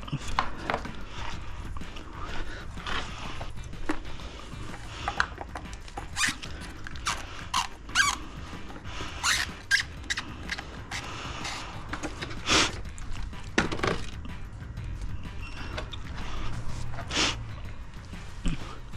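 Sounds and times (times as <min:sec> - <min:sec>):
push rod squeaking and scraping: 0:04.7 - 0:12.4, 0:15.2 - 0:17.2.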